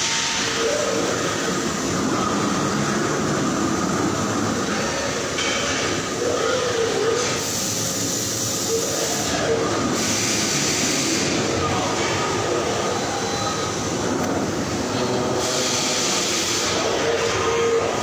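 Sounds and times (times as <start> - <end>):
machinery noise with hiss: 0.0 - 18.0.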